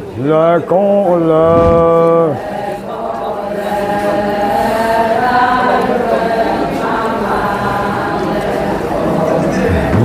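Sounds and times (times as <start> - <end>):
chorus chanting in unison: 1.3 - 10.0.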